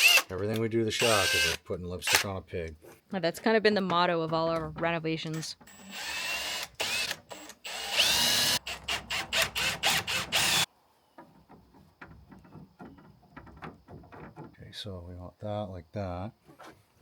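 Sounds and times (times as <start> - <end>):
power drill whining: 0.0 - 0.3, 1.0 - 1.6, 5.6 - 10.7
faint light clicks and knocks: 11.1 - 14.7.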